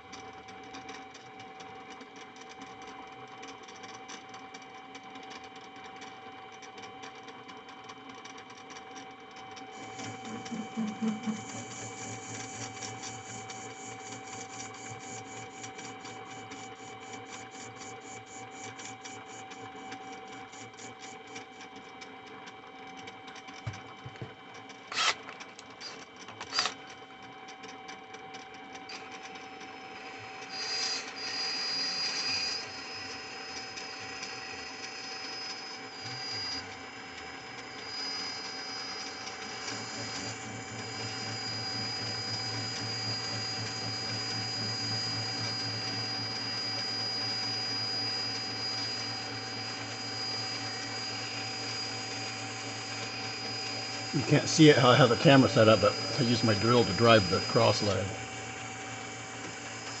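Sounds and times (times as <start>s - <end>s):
sharp clicks: 21.0s - 29.7s
power drill whining: 24.9s - 26.8s, 30.4s - 33.2s, 37.6s - 60.0s.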